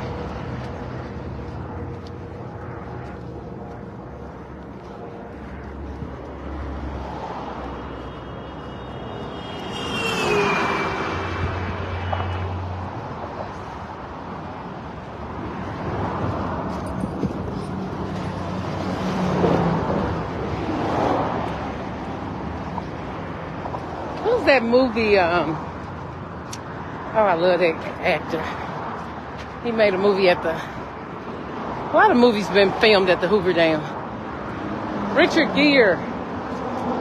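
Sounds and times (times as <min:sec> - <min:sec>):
falling whine from passing vehicle: 0:00.0 - 0:24.2
vehicles passing by: 0:00.0 - 0:37.0.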